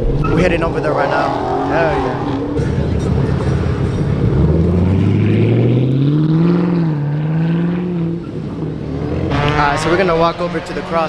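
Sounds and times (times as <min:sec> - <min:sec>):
car engine accelerating: 0:00.0 - 0:11.0.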